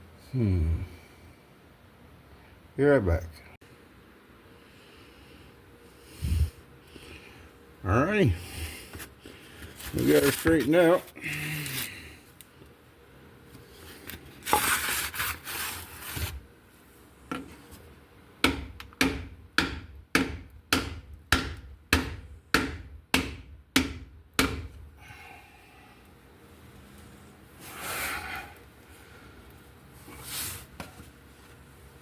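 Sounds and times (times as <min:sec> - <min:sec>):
hammer striking wooden board: 0:18.4 - 0:24.7.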